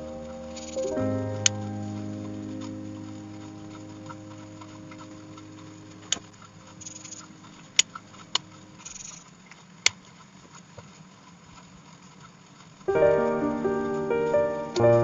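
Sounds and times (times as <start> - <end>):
faint background music: 0.0 - 8.9.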